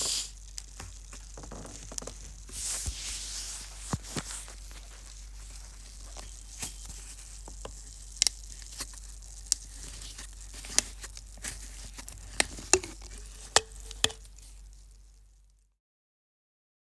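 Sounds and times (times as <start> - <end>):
soda fizzing hiss: 0.0 - 0.4.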